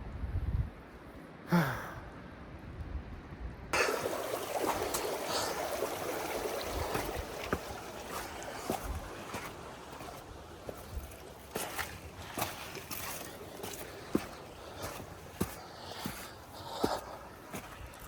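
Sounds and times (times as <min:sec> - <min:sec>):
running water: 0:03.8 - 0:18.0.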